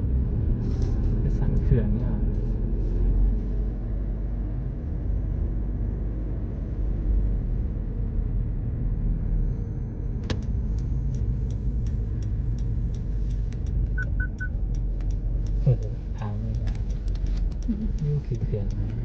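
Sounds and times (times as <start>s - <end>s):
car road and engine rumble: 0.0s - 19.0s
light irregular ticks: 10.3s - 19.0s.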